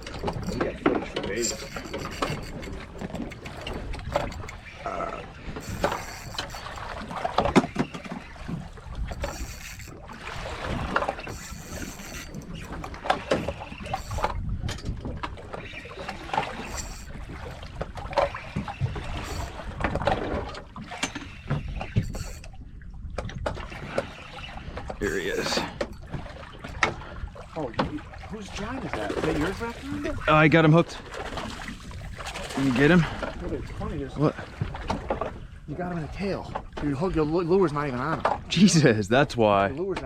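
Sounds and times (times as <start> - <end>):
wind on microphone: 0.0 - 20.5, 21.3 - 30.4
knocks and clatter on boat: 0.0 - 40.0
water slapping against boat hull: 0.0 - 40.0.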